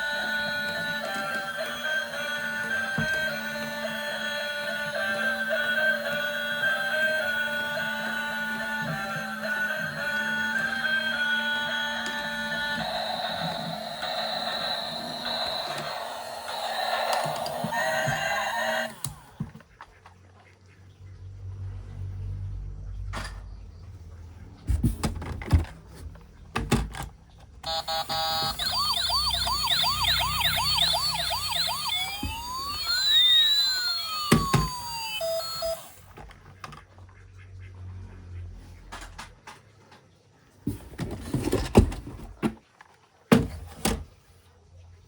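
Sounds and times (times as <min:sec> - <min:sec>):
toy electronic siren: 0:00.0 - 0:19.4, 0:27.7 - 0:36.1.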